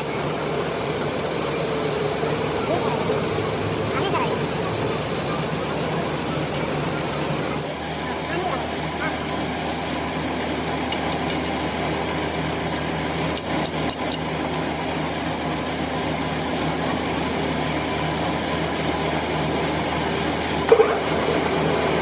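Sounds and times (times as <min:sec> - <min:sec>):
metal lathe running: 0:00.0 - 0:22.0
sharp metallic ticks: 0:10.9 - 0:11.6, 0:13.3 - 0:14.3.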